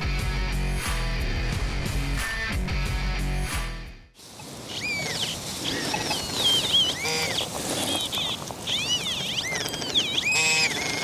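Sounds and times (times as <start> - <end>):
birds chirping: 4.2 - 11.0.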